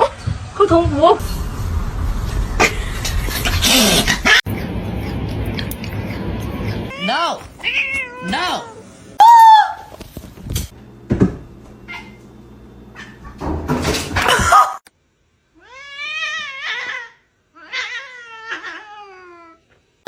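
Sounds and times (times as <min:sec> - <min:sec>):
harsh noisy burst: 0:01.2 - 0:05.3
low hum: 0:01.2 - 0:07.0
cat yowling: 0:06.9 - 0:09.9, 0:15.6 - 0:19.6.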